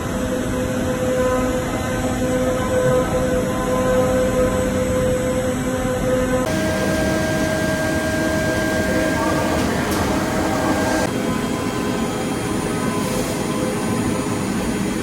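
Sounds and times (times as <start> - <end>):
milling machine running: 6.5 - 15.0.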